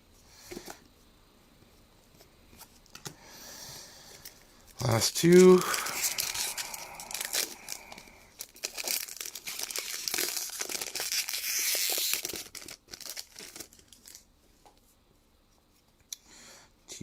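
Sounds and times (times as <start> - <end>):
wrapper tearing and crinkling: 4.8 - 14.3.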